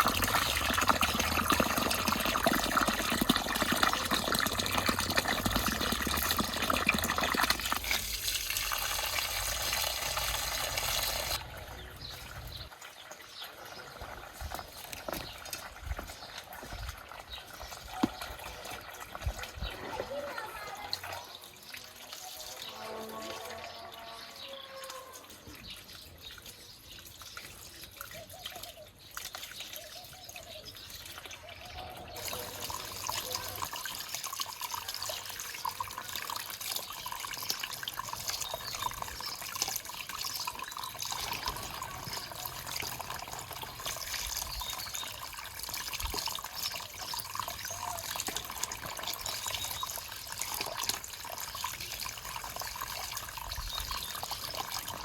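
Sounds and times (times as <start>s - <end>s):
water running and splashing: 0.0s - 55.0s.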